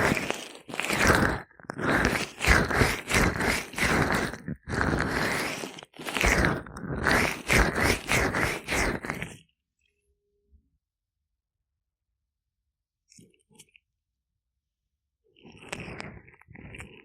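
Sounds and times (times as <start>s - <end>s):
wet rubbing strokes: 0.0s - 9.4s.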